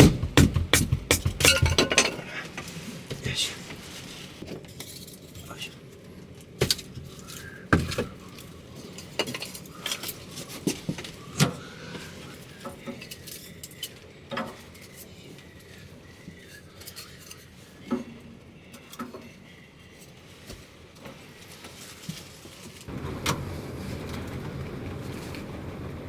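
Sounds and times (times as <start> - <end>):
metal and glass objects clinking: 1.4 - 2.3.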